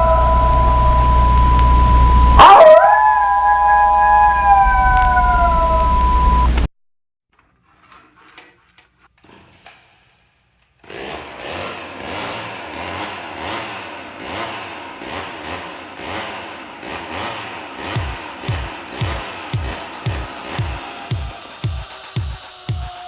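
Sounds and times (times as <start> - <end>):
chainsaw revving: 10.8 - 22.7
deep bass drum beat: 18.0 - 23.0.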